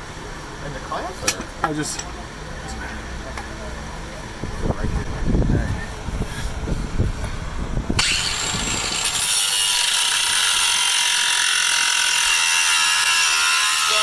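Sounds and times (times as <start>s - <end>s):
angle grinder cutting metal: 8.0s - 14.0s.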